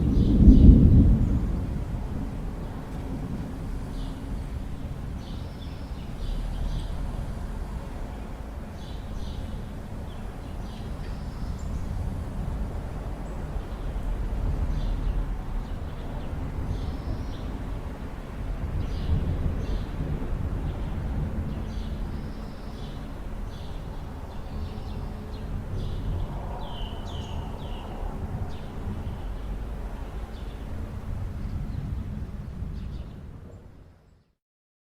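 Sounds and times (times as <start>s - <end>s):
thunder rumbling: 0.0s - 8.1s, 11.3s - 33.8s
wind: 0.0s - 34.4s
birds chirping: 20.7s - 29.6s.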